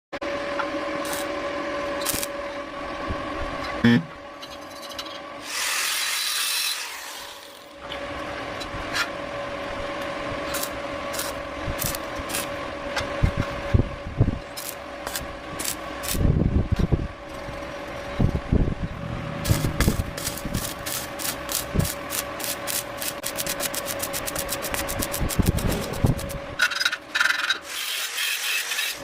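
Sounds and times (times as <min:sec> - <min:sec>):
faint steady hum: 0:00.6 - 0:05.4.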